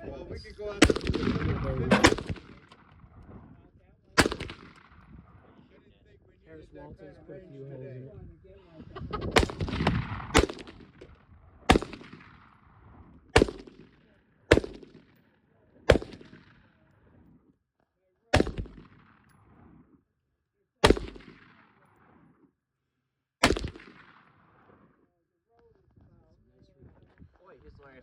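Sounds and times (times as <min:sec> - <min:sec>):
gunshots with echo: 0:00.8 - 0:03.3, 0:04.2 - 0:05.7, 0:09.3 - 0:15.2, 0:15.9 - 0:16.7, 0:18.3 - 0:19.7, 0:20.8 - 0:22.1, 0:23.4 - 0:24.7.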